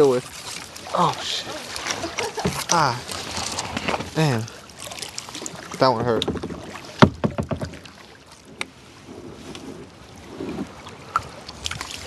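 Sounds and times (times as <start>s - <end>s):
paddle splashing: 0.0s - 12.0s
water moving around hull: 0.0s - 12.0s.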